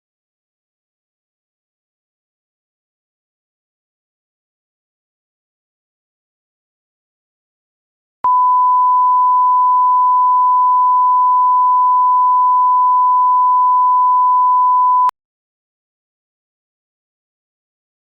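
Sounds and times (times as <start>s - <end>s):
steady sine tone: 8.2s - 15.1s.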